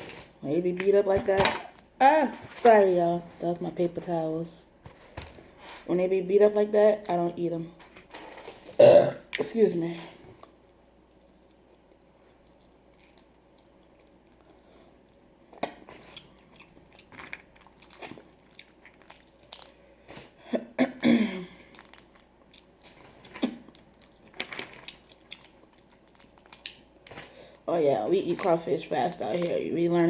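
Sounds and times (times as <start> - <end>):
lip smacking and chewing: 10.4 - 19.8, 21.7 - 27.2.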